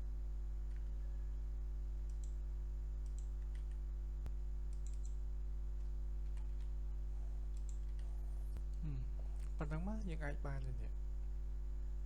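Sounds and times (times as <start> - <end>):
low electrical hum: 0.0 - 12.0
computer mouse and keyboard clicks: 4.7 - 5.2, 7.5 - 8.8.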